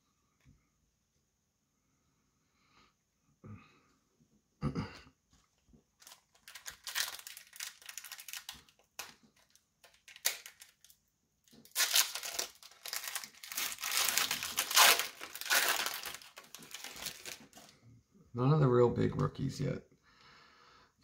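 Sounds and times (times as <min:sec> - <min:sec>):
card pack wrapper crinkling: 0:06.0 - 0:17.7.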